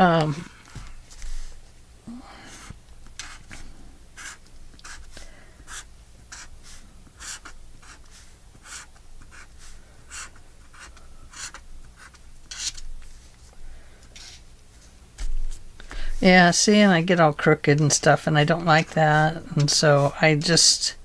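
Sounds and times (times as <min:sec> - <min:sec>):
pen scratching on paper: 0:02.5 - 0:03.5, 0:04.2 - 0:12.8.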